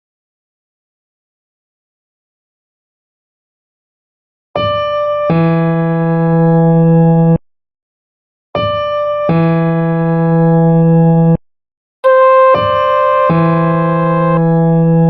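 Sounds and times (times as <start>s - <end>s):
electronic keyboard chords: 12.0s - 15.0s.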